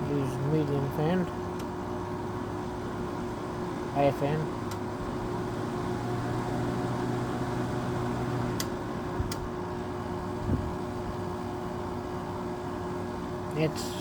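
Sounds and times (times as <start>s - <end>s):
air conditioner running: 0.0s - 14.0s.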